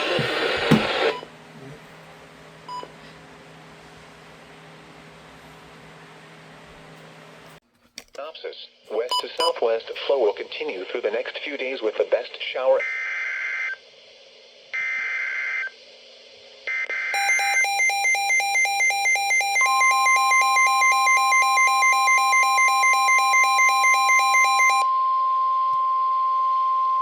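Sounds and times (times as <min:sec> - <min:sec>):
electronic alarm beeping rapidly: 0:17.2 - 0:24.8
steady warning alarm tone: 0:17.2 - 0:24.9.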